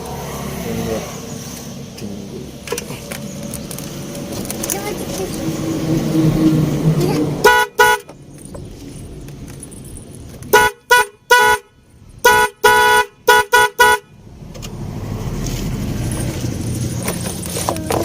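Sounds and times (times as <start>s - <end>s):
car horns tooting: 7.4s - 8.2s, 10.4s - 14.2s.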